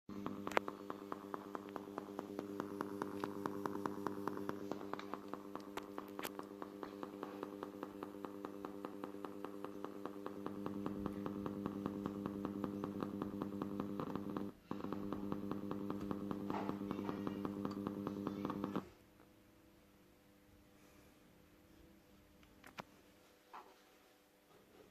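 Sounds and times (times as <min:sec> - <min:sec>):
subwoofer hum: 0:00.1 - 0:18.9
rapid regular popping: 0:00.1 - 0:19.0.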